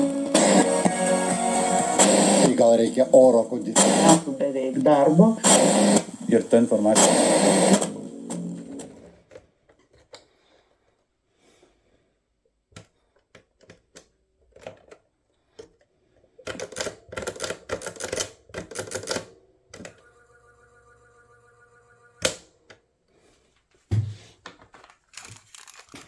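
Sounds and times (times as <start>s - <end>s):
clicking and clattering of small parts: 9.3s - 10.3s, 12.7s - 20.0s, 24.5s - 26.0s.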